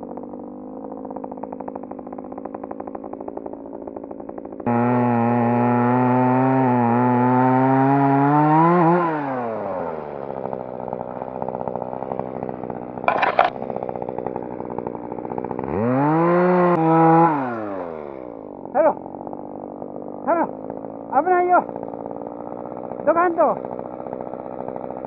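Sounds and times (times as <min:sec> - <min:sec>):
chainsaw running: 0:00.0 - 0:25.0
short sharp rattle: 0:13.1 - 0:13.6.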